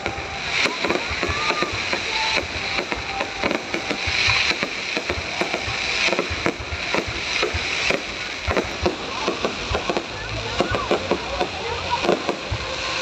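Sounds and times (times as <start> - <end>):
crackling hiss of fireworks: 0.0 - 13.0
fireworks popping and banging: 0.0 - 13.0.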